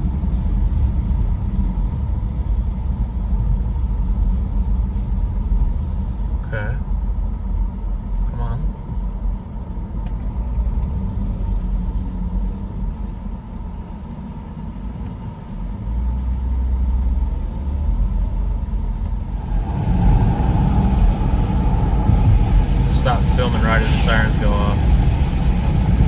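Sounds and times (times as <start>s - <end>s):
heavy low rumble: 0.0s - 13.9s, 15.6s - 26.0s
warning siren steady tone: 19.1s - 26.0s.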